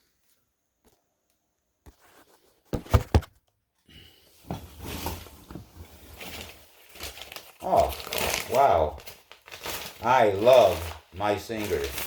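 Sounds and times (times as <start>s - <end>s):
cardboard box thumps: 2.7s - 3.4s
cardboard rustling and scraping: 4.4s - 12.0s.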